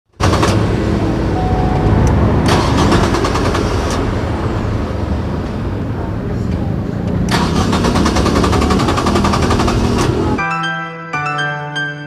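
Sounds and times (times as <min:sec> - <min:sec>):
starter motor cranking engine: 0:00.2 - 0:00.9, 0:02.4 - 0:04.2, 0:07.3 - 0:10.3.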